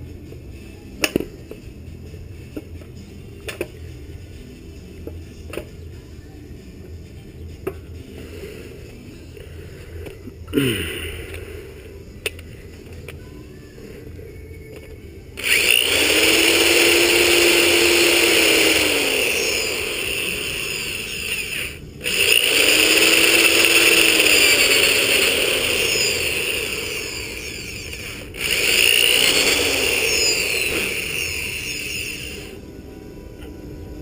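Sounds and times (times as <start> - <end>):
electric drill running: 15.4 - 32.6.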